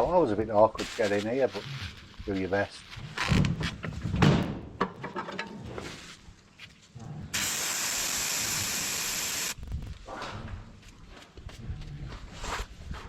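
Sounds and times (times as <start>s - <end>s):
aerosol spray hissing: 7.4s - 9.6s.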